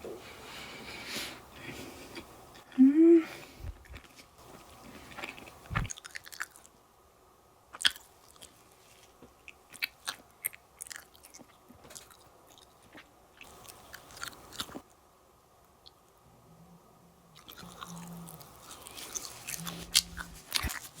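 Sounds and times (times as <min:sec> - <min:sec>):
person chewing cake: 0:03.8 - 0:06.7, 0:07.7 - 0:14.9, 0:17.4 - 0:21.0.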